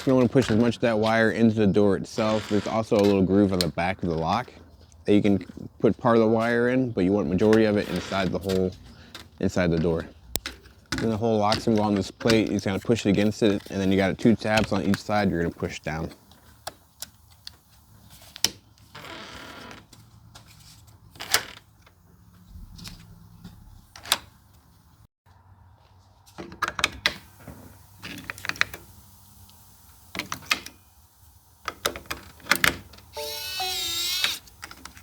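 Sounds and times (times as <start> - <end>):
falling electronic chime: 33.2 - 34.2.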